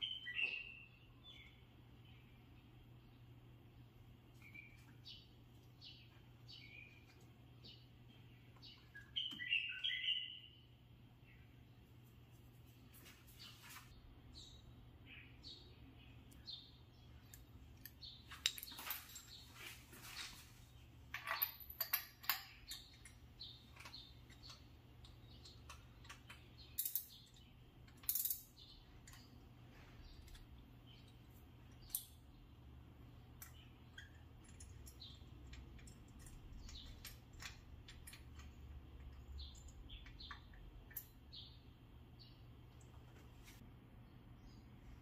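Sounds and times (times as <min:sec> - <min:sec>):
low steady hum: 0:00.0 - 0:45.0
hand tools clicking and tapping: 0:21.1 - 0:29.4, 0:33.2 - 0:41.4.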